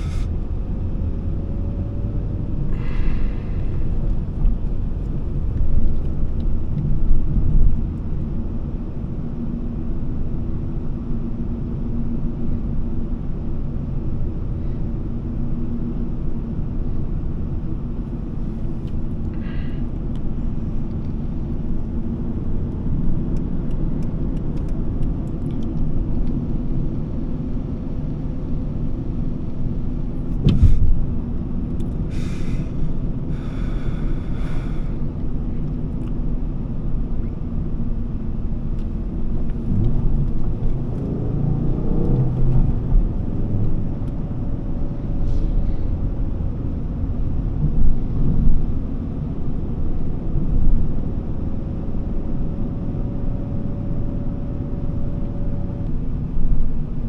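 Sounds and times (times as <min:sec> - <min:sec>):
car engine rumble: 0:00.0 - 0:57.0
road noise: 0:00.0 - 0:57.0
short thump: 0:30.3 - 0:30.9.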